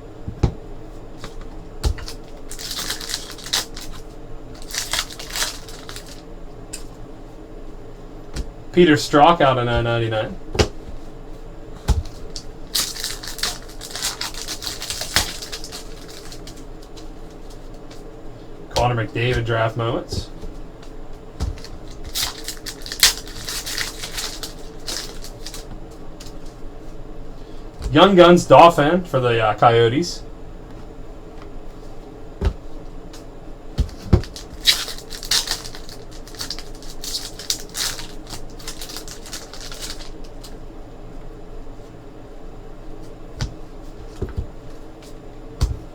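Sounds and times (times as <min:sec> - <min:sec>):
cards and wrappers rustling: 0:01.2 - 0:06.2, 0:11.8 - 0:18.1, 0:18.8 - 0:26.6, 0:33.8 - 0:40.6
soft thumps: 0:44.2 - 0:44.6.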